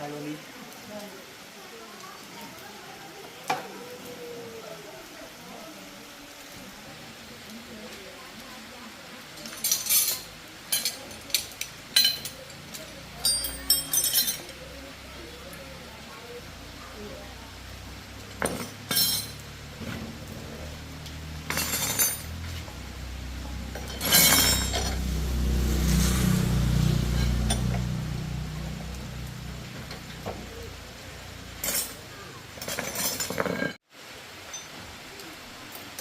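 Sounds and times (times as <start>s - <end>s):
metal tools clinking: 9.4s - 14.6s, 18.4s - 19.4s, 21.4s - 22.6s, 23.7s - 25.0s, 27.1s - 27.8s, 31.6s - 32.0s, 32.6s - 33.8s.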